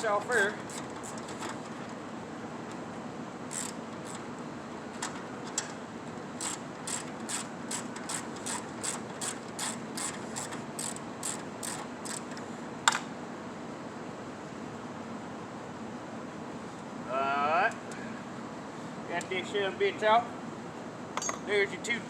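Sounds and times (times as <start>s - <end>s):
hand ratchet clicking: 0.3s - 1.6s, 3.5s - 4.2s, 6.4s - 13.0s
sharp metal clank: 21.2s - 21.5s.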